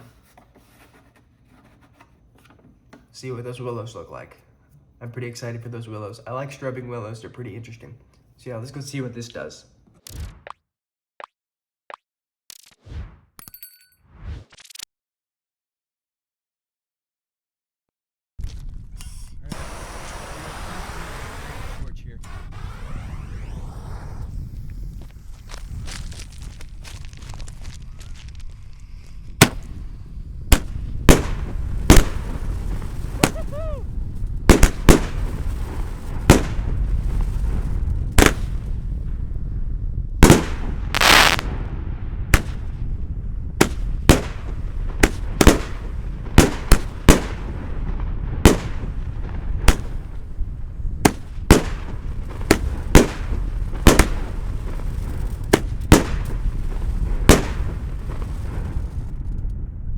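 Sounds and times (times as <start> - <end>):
firework bangs: 18.4 - 59.7
firework hissing burst: 19.3 - 26.8, 27.5 - 39.0, 40.2 - 42.9, 43.5 - 59.1.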